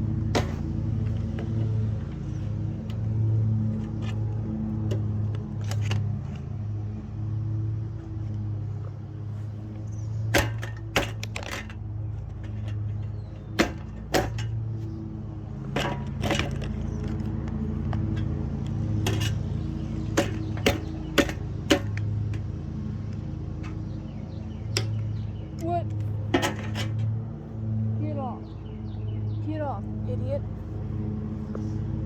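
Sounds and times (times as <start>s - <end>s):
box fan motor hum: 0.0s - 29.4s
sharp clicks and knocks: 0.2s - 6.5s, 10.3s - 15.0s, 15.6s - 22.5s, 23.1s - 27.2s.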